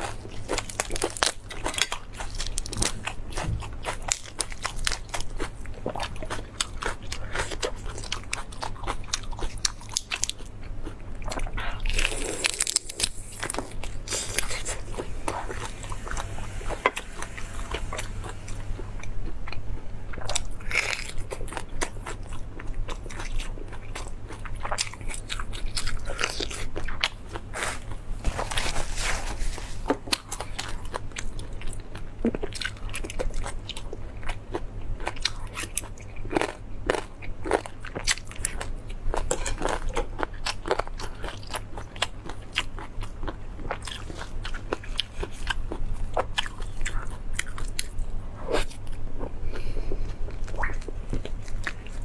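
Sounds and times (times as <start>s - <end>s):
chewing meat: 0.0s - 15.8s, 20.1s - 27.4s, 29.9s - 52.0s
steady low hum: 10.6s - 24.7s.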